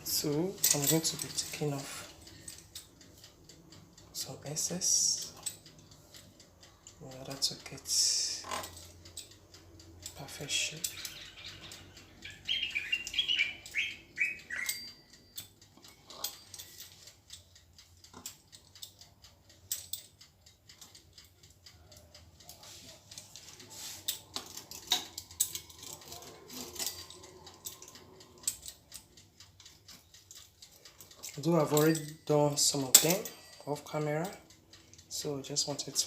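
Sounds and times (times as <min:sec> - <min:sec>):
bird chirping: 0:10.6 - 0:15.2.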